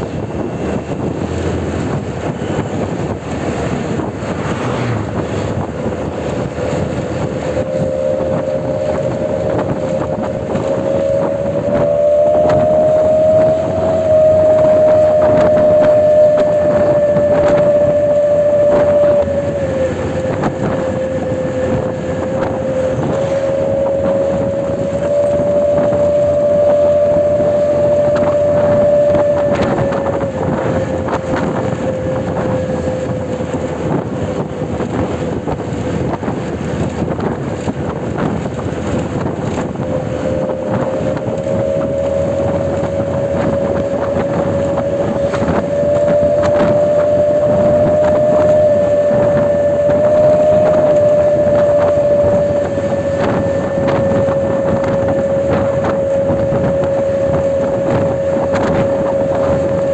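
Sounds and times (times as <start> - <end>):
air horn blast: 3.8 - 37.0, 38.4 - 59.9.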